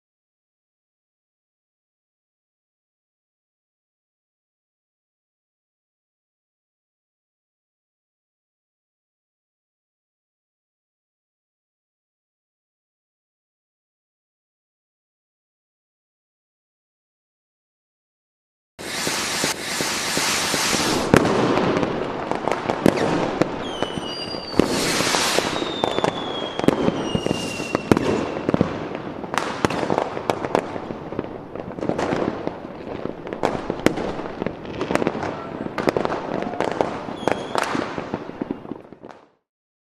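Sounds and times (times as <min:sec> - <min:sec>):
firecrackers banging: 0:18.8 - 0:39.2
whistling fireworks: 0:18.8 - 0:39.4.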